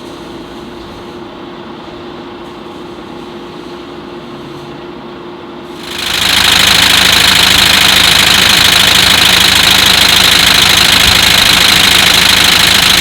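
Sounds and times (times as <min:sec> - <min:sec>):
loud steady engine rattle: 0:05.8 - 0:13.0.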